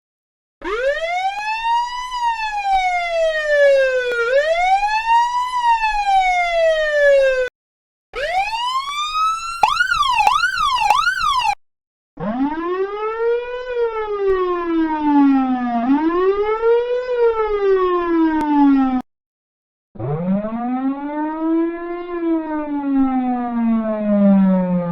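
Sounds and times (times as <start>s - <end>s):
police siren wail: 0.7s - 7.5s, 8.2s - 11.6s, 12.3s - 19.0s
police siren yelp: 8.2s - 11.6s.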